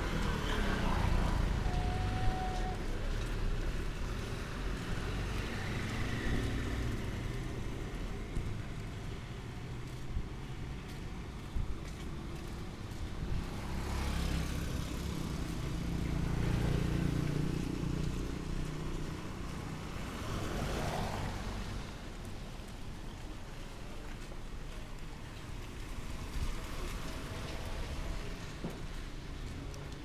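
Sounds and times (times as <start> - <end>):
vehicle engine rumble passing: 0.0 - 24.0
street noise: 0.0 - 30.0
hiss of passing vehicle: 13.2 - 17.9.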